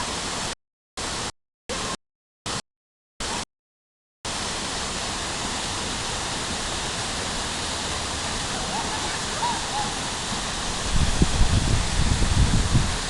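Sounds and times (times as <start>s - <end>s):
waterfall rushing: 4.3s - 13.0s.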